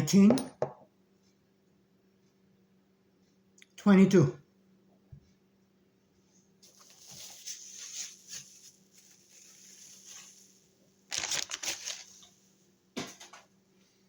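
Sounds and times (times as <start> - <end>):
plastic packaging crinkling: 6.6 - 12.4.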